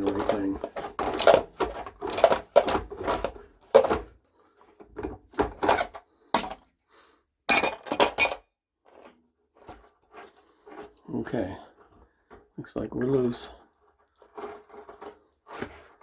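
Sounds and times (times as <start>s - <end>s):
wrench clanking on metal nut: 1.0s - 2.8s, 5.6s - 6.6s, 7.5s - 8.4s.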